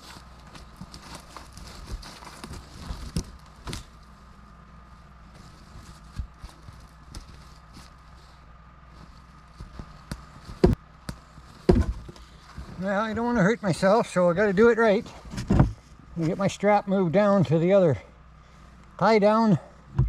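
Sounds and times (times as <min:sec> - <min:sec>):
footsteps in snow: 0:00.0 - 0:14.6.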